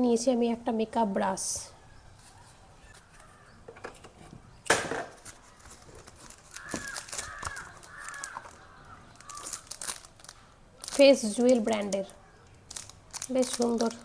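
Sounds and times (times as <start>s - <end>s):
packaging crinkling: 5.2s - 14.0s
sharp crackle of packaging: 5.2s - 14.0s.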